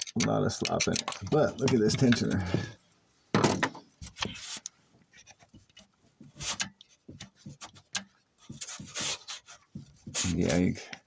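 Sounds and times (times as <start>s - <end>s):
hand rubbing and scraping metal chain: 0.0s - 2.4s.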